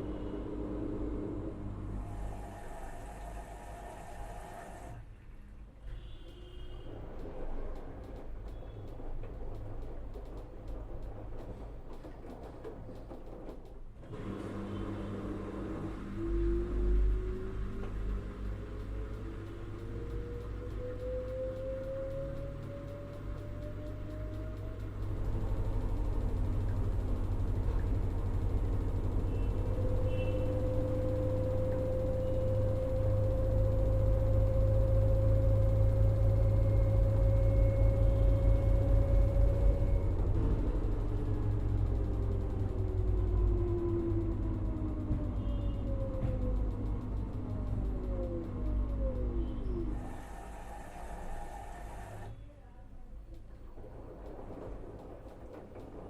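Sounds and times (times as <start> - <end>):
motor whine: 0.0 - 5.0, 14.1 - 52.4
washing machine running: 0.0 - 5.1, 6.0 - 56.0.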